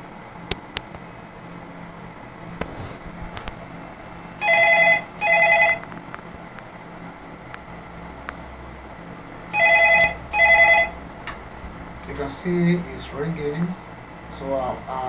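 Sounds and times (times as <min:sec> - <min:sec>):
telephone warbling ring: 0:04.4 - 0:05.8, 0:09.5 - 0:11.0.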